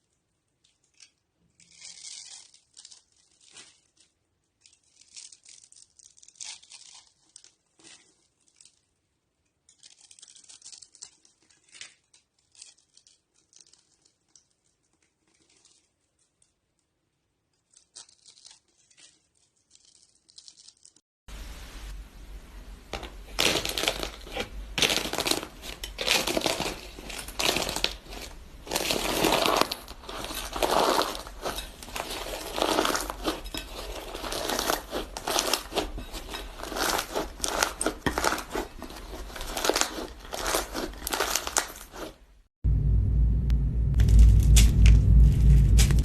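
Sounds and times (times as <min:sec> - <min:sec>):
crunchy material crinkling: 0:00.0 - 0:16.9, 0:17.5 - 0:21.0, 0:23.0 - 0:42.5
low steady hum: 0:21.3 - 0:24.8, 0:42.6 - 0:46.0.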